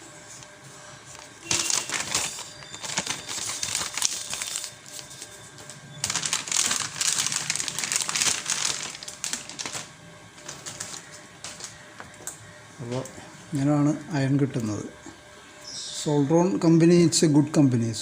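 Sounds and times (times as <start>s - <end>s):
packaging crinkling: 1.2s - 11.8s.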